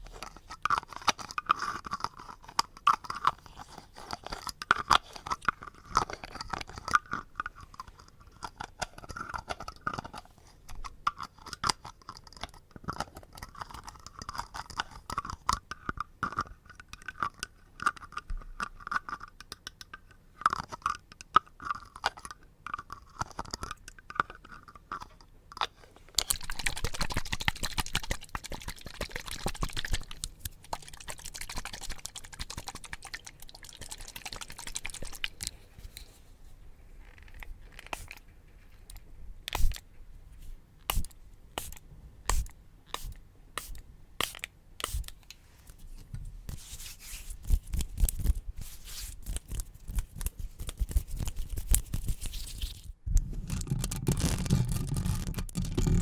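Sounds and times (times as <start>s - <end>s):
crisp clicking and crunching: 21.6s - 36.2s, 47.3s - 56.0s
scratchy rustle: 45.5s - 56.0s.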